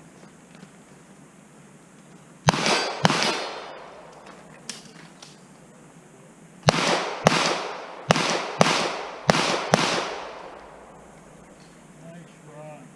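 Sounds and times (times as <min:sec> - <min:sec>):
pistol shots echoing: 0:02.5 - 0:04.5, 0:06.6 - 0:11.6.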